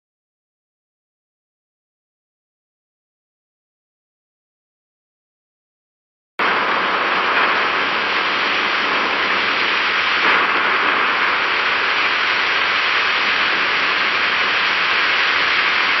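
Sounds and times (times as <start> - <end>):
heavy rain pouring: 6.4 - 16.0.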